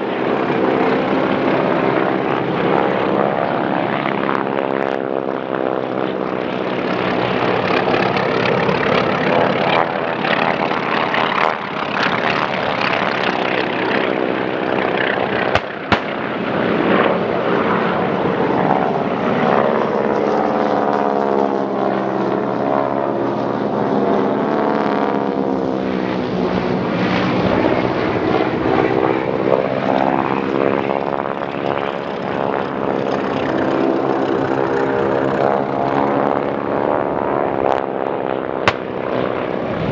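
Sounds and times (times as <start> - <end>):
propeller plane engines droning: 0.0 - 39.9
sharp crack: 15.5 - 16.3, 38.7 - 39.0.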